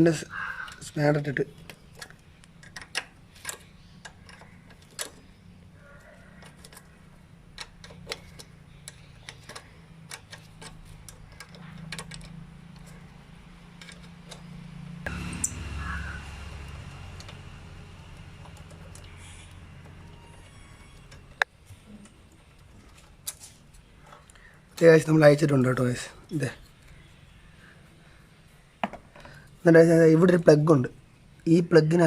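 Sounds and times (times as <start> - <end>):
steady low hum: 0.0 - 24.8.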